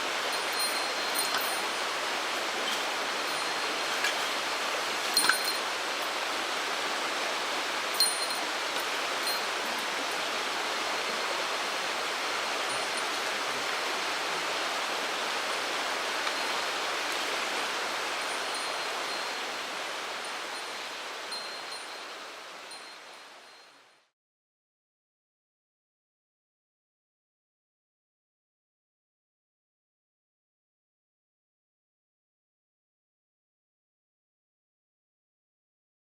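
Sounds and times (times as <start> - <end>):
stream water rushing: 0.0 - 24.0.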